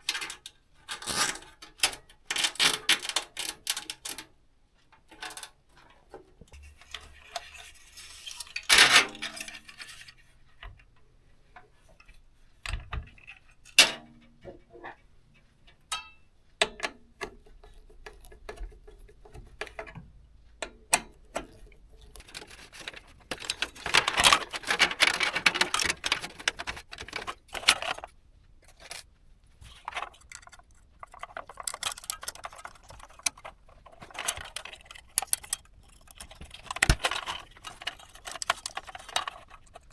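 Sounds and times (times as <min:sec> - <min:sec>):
plastic and metal parts clicking: 0:16.6 - 0:39.9
rustling: 0:21.5 - 0:39.9.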